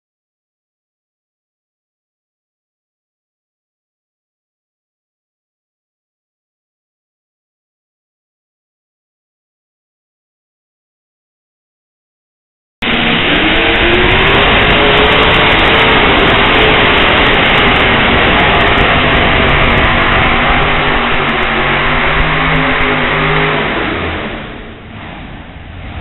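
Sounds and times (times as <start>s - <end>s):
tractor engine at full throttle: 12.8s - 26.0s.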